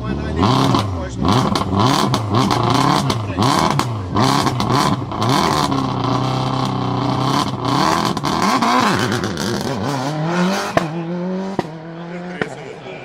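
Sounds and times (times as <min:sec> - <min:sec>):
car engine revving hard: 0:00.0 - 0:12.8.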